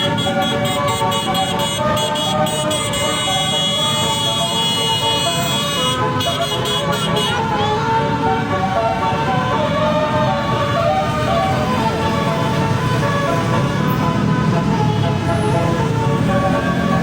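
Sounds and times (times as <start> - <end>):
musical bus air horn: 0.0 - 7.9.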